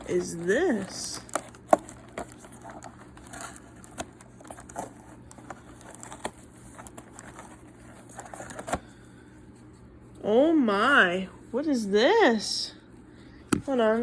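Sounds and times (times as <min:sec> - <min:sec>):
packaging clicks and taps: 0:00.0 - 0:08.8
wrapper crinkling: 0:00.0 - 0:08.8.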